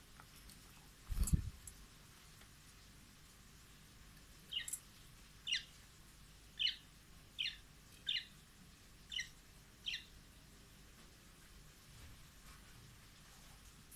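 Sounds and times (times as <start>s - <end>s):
budgerigar chirping: 5.5s - 5.7s, 6.6s - 6.8s, 7.4s - 8.3s, 9.1s - 10.1s.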